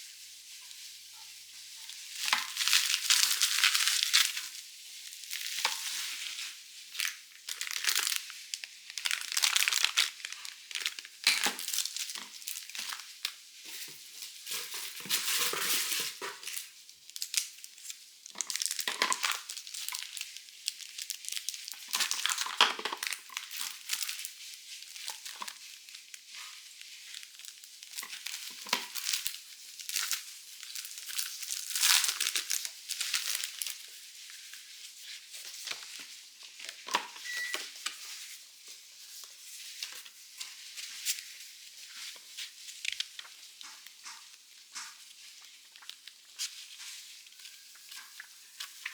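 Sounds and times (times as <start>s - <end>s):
packaging crinkling and rustling: 1.6s - 48.9s.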